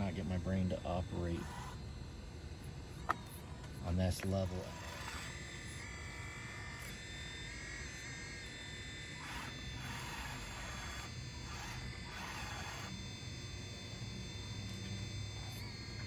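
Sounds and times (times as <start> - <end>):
small electric motors whining: 0.0 - 16.0.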